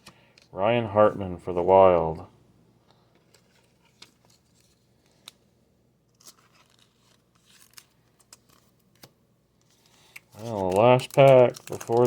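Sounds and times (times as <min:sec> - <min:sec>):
foil wrapper rustling: 0:10.0 - 0:12.0
trading cards clicking: 0:10.1 - 0:12.0.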